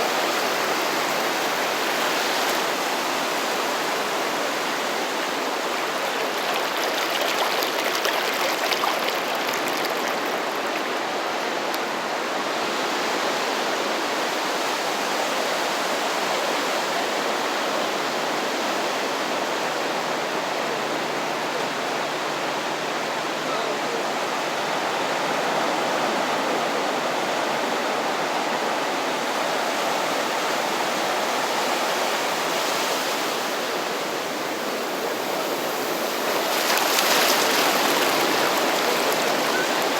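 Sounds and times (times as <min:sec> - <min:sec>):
gentle waves washing ashore: 0:00.0 - 0:39.9.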